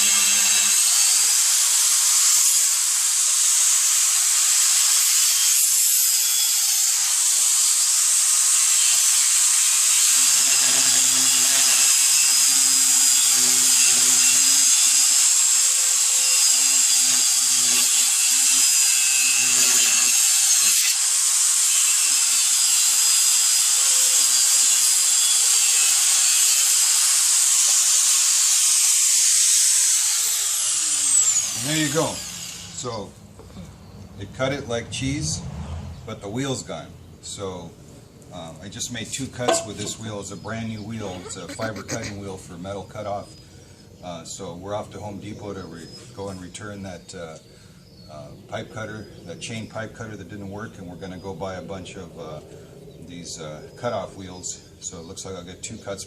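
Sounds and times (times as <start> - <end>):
angle grinder cutting metal pipe: 0.0 - 33.0, 39.1 - 40.2, 41.0 - 42.1.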